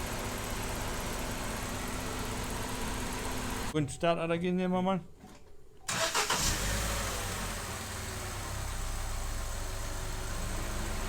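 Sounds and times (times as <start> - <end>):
car engine starting and idling: 0.0 - 3.7, 5.9 - 11.0.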